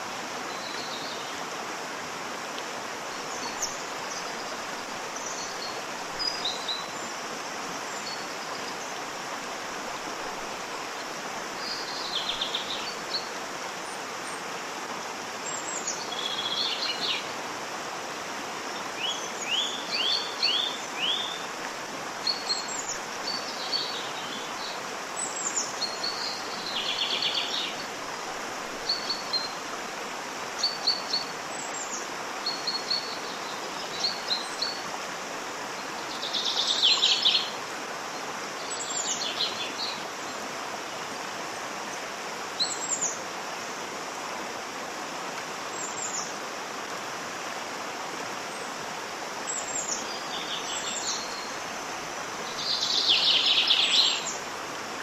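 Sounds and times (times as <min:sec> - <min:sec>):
waterfall rushing: 0:00.0 - 0:55.0
small birds chirping: 0:52.4 - 0:54.4.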